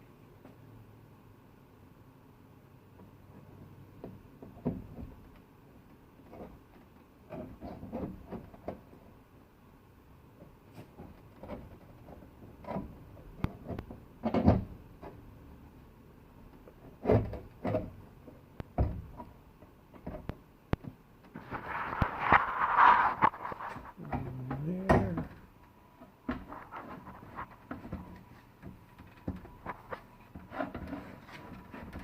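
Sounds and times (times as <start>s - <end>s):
metal scraping and sliding: 21.4s - 24.6s.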